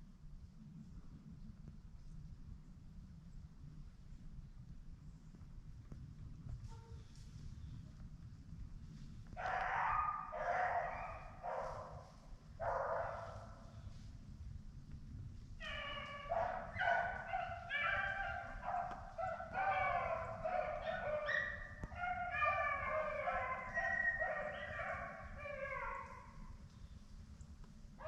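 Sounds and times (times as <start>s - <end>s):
hounds baying in chorus: 9.4s - 13.5s, 15.6s - 26.5s.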